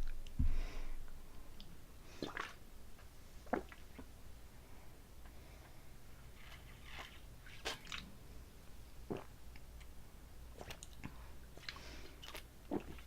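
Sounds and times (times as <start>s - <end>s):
person chewing food: 10.6s - 13.0s.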